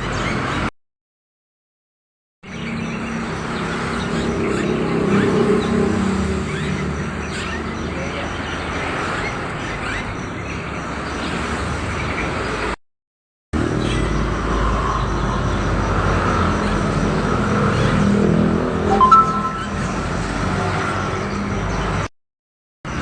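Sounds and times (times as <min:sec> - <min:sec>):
faint caged birds chirping: 0:00.0 - 0:00.7, 0:02.5 - 0:12.8, 0:13.6 - 0:20.5
road traffic: 0:02.5 - 0:12.8, 0:13.6 - 0:21.7
short two-pitch tone: 0:18.9 - 0:20.2.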